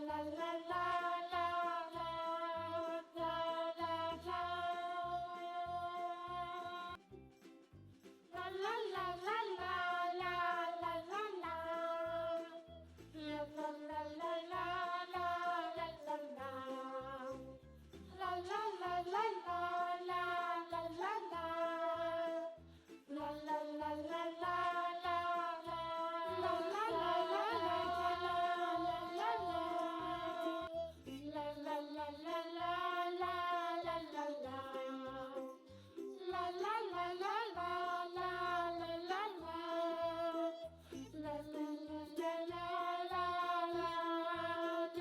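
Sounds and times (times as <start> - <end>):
children's song with accompaniment: 0.0 - 45.0.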